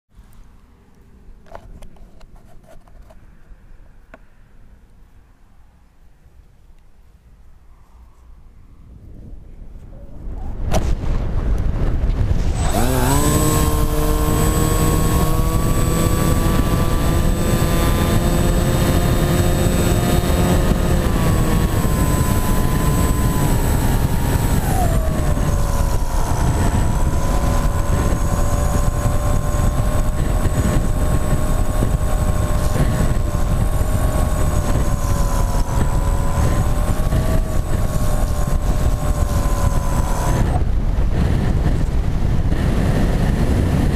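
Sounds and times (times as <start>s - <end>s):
wind rush on microphone: 8.4s - 43.9s
model plane motor and propeller: 12.1s - 43.9s.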